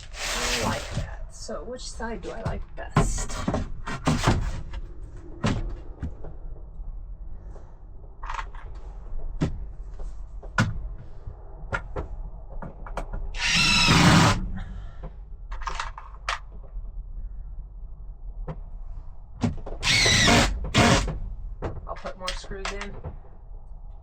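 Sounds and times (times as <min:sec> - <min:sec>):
power drill driving screw into wood: 0:00.0 - 0:01.0, 0:13.4 - 0:14.5, 0:19.8 - 0:21.2.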